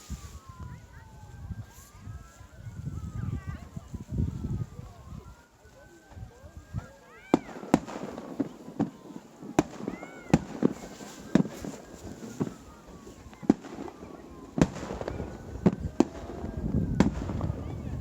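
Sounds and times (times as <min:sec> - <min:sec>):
fireworks whistling: 0:00.0 - 0:01.0, 0:01.6 - 0:18.0
firework shells bursting: 0:07.3 - 0:17.6.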